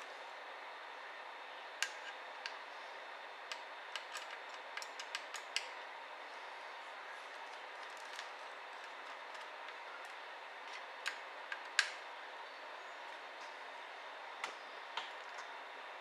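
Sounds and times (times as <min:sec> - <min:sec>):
small parts and tools clicking: 0:03.5 - 0:05.8, 0:07.5 - 0:12.0.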